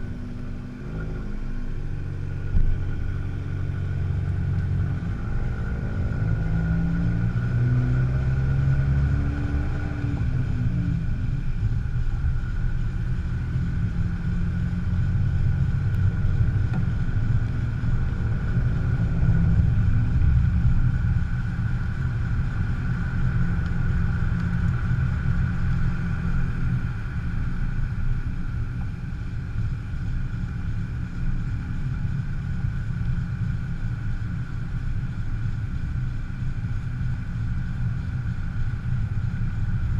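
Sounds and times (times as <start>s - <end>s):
low rumble of tyres: 0.0s - 39.9s.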